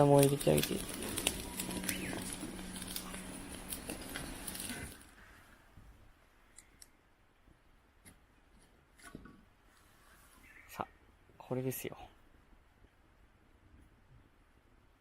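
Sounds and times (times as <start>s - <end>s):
campfire crackling and snapping: 0.0s - 5.7s.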